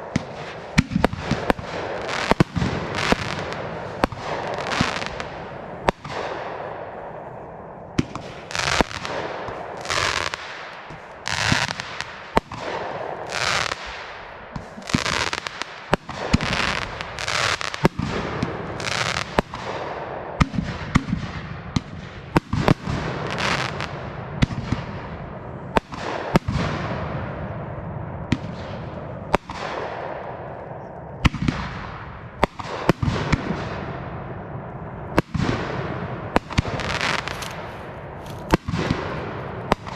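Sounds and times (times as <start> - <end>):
fireworks bursting: 0.0 - 7.1, 7.8 - 19.6, 35.2 - 39.9
fireworks hissing: 36.8 - 38.6.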